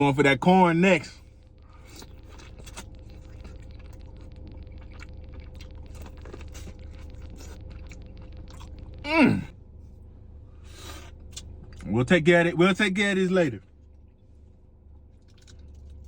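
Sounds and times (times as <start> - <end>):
low hum: 0.0 - 16.0
chewing corn crunches: 1.5 - 9.0, 10.7 - 11.9, 14.9 - 16.0.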